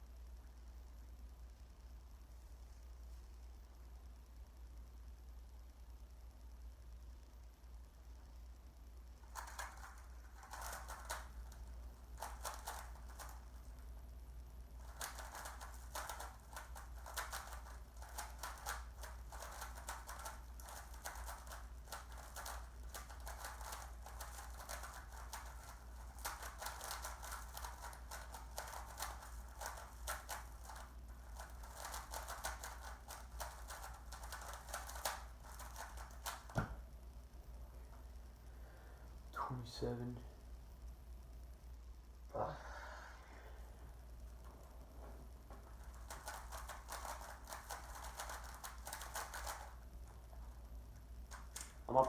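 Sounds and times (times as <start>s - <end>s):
puzzle cube clicking rattle: 9.2s - 13.8s, 14.8s - 36.6s, 45.8s - 49.8s, 51.3s - 51.9s.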